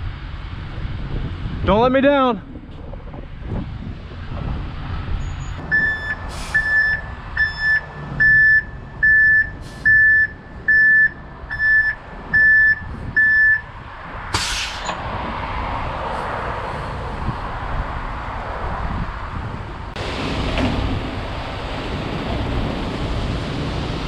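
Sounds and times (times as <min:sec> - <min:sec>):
truck reversing alarm beeping: 0:05.2 - 0:13.7
air hiss bursts: 0:14.3 - 0:15.0
engine running: 0:19.7 - 0:24.0.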